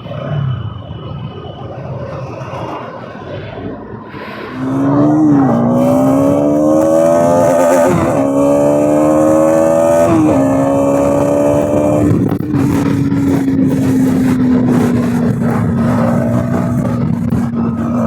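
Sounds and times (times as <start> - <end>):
motorcycle engine accelerating: 4.5 - 18.0.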